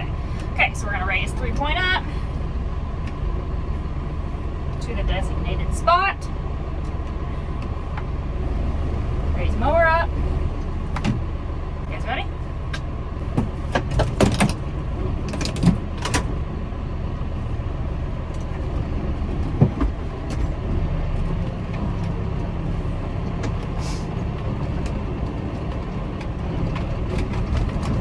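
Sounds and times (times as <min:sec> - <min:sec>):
tractor diesel engine running: 0:00.0 - 0:28.0
sharp clicks and knocks: 0:12.7 - 0:16.4.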